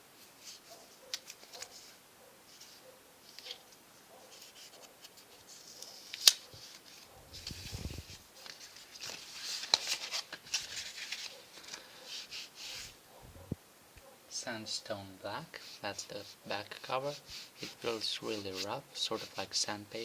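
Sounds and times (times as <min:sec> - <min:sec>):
plastic sheet crinkling: 0:04.5 - 0:12.8.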